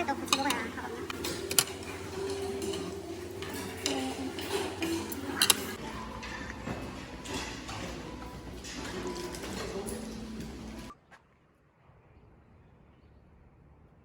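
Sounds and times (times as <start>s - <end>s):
cutlery clinking against dishes: 0.0s - 10.9s.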